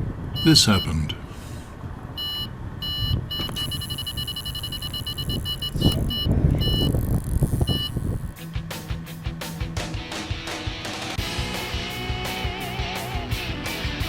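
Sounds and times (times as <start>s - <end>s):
electronic bite alarm beeping: 0.4s - 1.0s, 2.2s - 8.3s
wind buffeting microphone: 2.9s - 8.4s.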